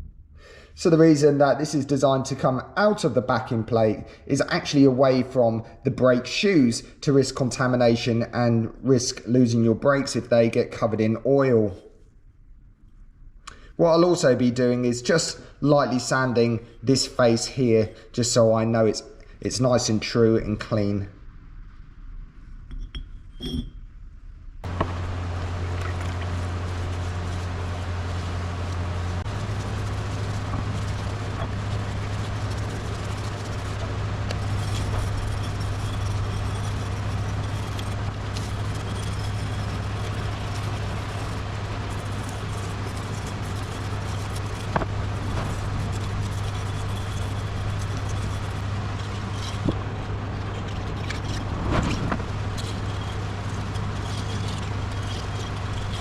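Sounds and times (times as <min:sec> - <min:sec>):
sanding tool grinding metal: 0:24.6 - 0:56.0.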